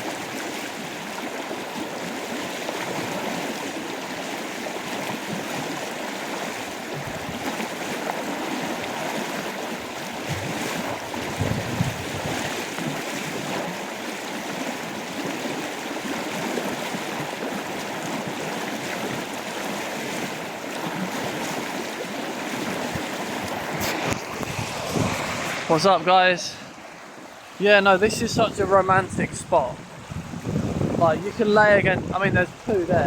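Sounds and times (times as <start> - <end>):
river water rushing: 0.0 - 33.0.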